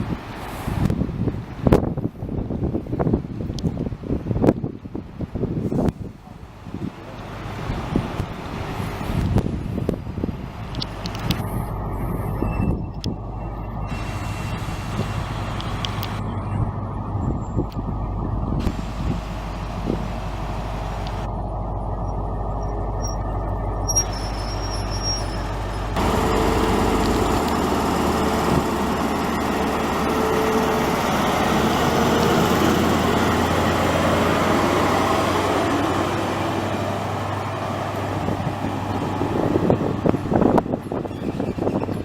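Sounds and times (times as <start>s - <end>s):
low engine hum: 0.0s - 42.0s
train rolling past: 6.2s - 42.0s
thin high squeals: 22.6s - 26.0s.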